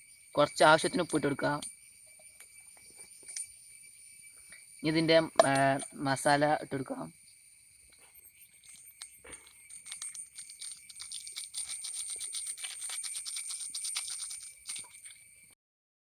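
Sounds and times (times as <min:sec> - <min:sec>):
seasoning crinkling into a pan: 0:08.0 - 0:15.5.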